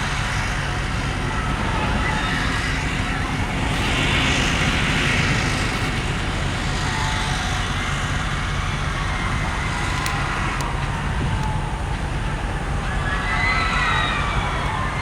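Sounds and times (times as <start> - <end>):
engine and traffic rumble: 0.0 - 15.0.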